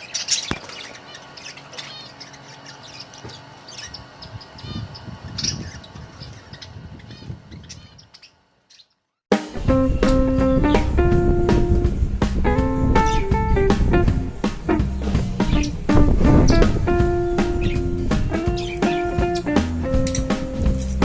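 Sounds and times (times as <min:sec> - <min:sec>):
budgerigars chirping and chattering: 0:00.0 - 0:09.2, 0:13.0 - 0:13.3, 0:15.2 - 0:15.8, 0:16.4 - 0:20.9
music: 0:09.3 - 0:21.0.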